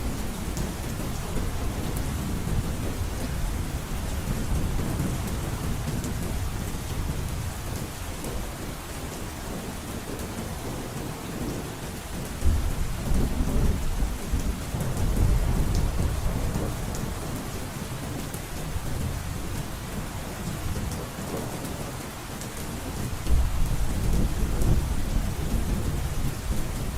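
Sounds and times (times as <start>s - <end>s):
heavy rain on a roof: 0.0s - 26.9s
thunder rumble: 23.0s - 26.9s.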